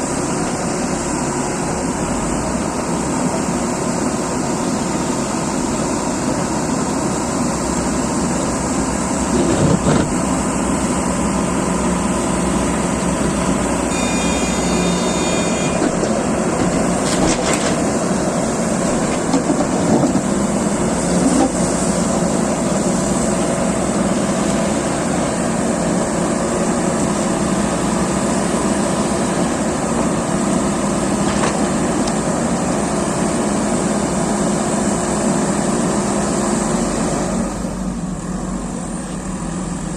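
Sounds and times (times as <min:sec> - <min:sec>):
excavator diesel engines running: 0:00.0 - 0:39.9
high-pitched tone: 0:13.9 - 0:15.8.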